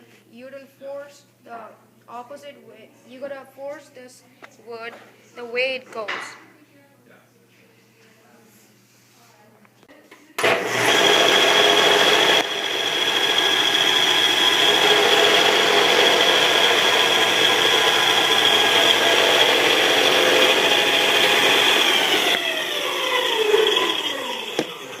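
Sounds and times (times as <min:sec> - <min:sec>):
belt sander whining: 0:10.4 - 0:25.0
wood being sanded: 0:10.8 - 0:25.0.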